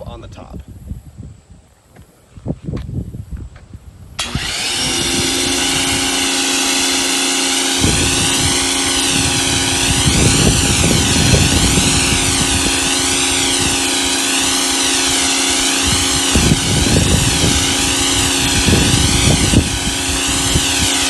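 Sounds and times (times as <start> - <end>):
high-pressure spray hissing: 4.2 - 21.0
pressure washer motor hum: 4.2 - 21.0.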